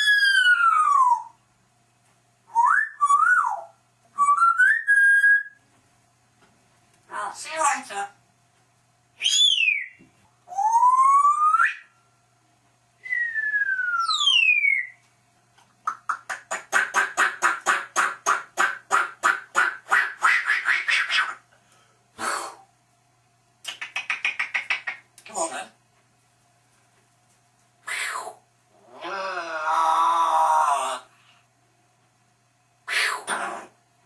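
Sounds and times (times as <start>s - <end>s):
parrot whistling and calling: 0.0s - 1.4s, 2.5s - 5.6s, 9.2s - 12.0s, 13.0s - 15.0s, 16.5s - 21.4s.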